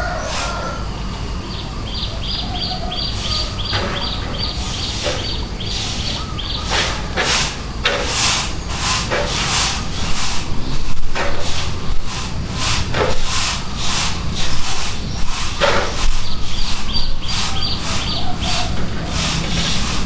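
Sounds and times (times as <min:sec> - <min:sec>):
bird chirping: 0:01.0 - 0:07.0, 0:16.0 - 0:19.8
stick broom swishing on ground: 0:03.2 - 0:20.0.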